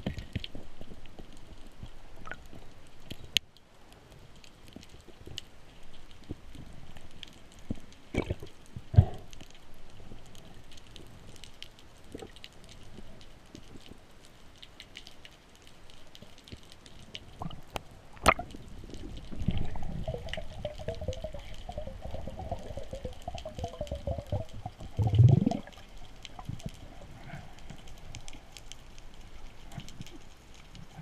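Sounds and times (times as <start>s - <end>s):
underwater crackling clicks: 0.0s - 3.6s, 4.4s - 31.0s
low bubbling rumble: 17.4s - 27.2s.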